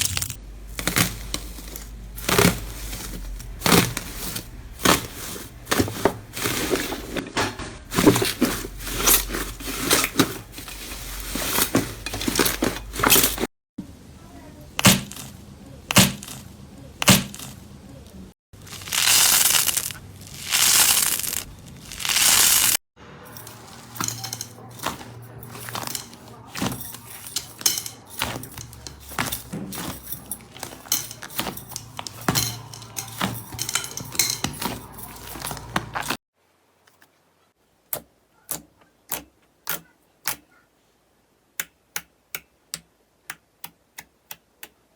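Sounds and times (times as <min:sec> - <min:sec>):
slime crackling and popping: 0:18.6 - 0:22.8
slime squelching: 0:18.6 - 0:22.8, 0:23.6 - 0:36.2.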